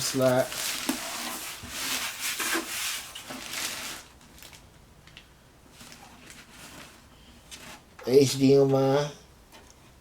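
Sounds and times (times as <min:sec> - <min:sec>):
rubbing handling noise: 0:00.0 - 0:04.2, 0:05.7 - 0:08.3.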